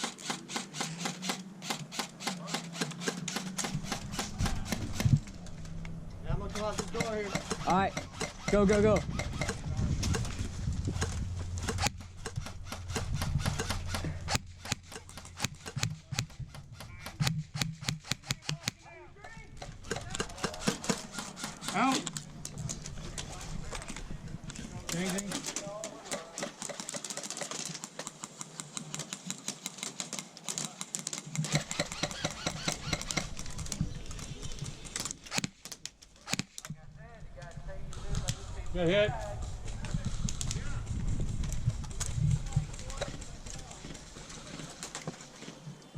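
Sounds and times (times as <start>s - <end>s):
airsoft guns firing: 0.0s - 5.4s, 6.5s - 18.9s, 19.5s - 22.8s, 28.4s - 34.2s
sharp clicks and knocks: 0.0s - 36.8s
low hum: 3.2s - 24.9s.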